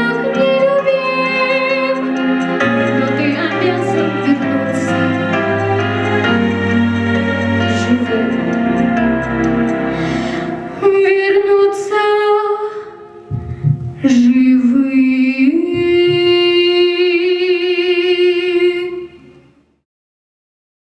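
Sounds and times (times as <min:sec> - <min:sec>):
woman singing: 0:00.0 - 0:05.3, 0:07.6 - 0:08.5, 0:10.8 - 0:13.3, 0:13.9 - 0:19.3
soft instrumental backing: 0:00.0 - 0:19.4.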